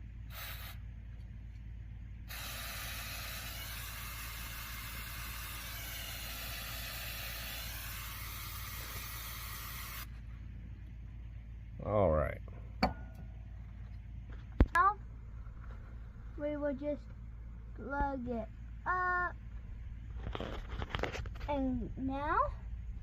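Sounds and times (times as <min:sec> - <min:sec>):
aerosol can spraying hiss: 0:00.3 - 0:00.8, 0:02.3 - 0:10.1.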